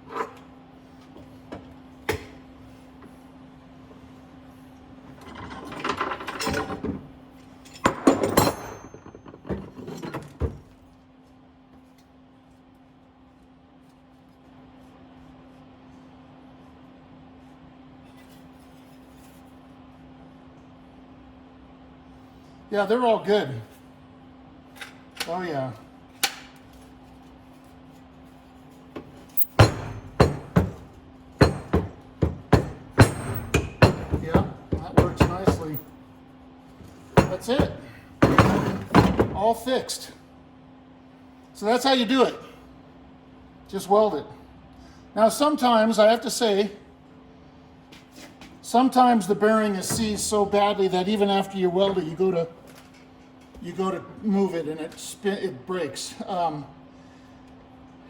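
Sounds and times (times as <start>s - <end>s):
metallic clanks of hood hinge: 29.4s - 35.8s.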